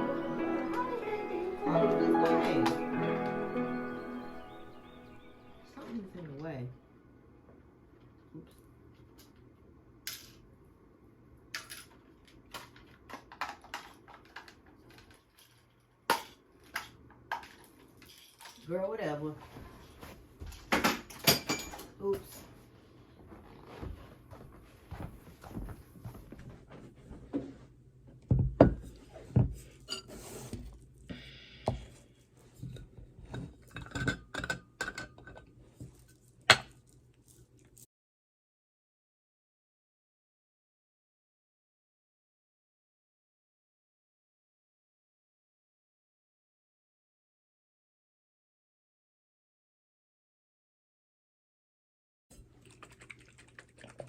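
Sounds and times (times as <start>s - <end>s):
household items clicking and knocking: 11.6s - 18.7s
household objects knocking and clinking: 20.6s - 21.9s, 32.7s - 35.4s.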